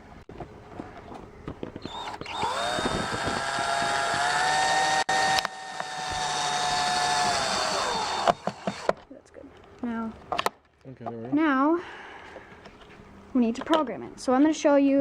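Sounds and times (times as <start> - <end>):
power drill motor whine: 1.8 - 9.0.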